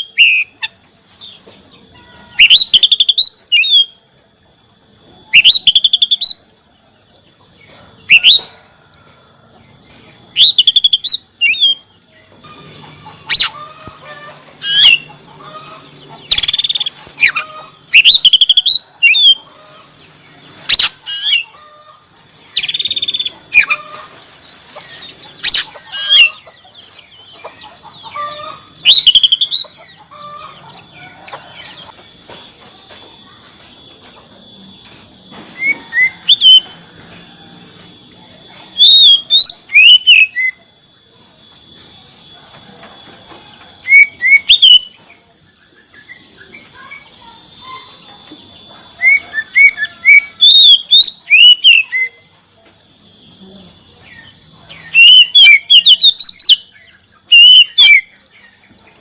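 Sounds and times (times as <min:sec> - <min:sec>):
bird singing varied phrases: 0:00.0 - 0:04.1, 0:05.2 - 0:08.5, 0:10.2 - 0:32.0, 0:35.6 - 0:36.8, 0:38.4 - 0:41.2, 0:43.8 - 0:52.4, 0:53.1 - 0:59.0.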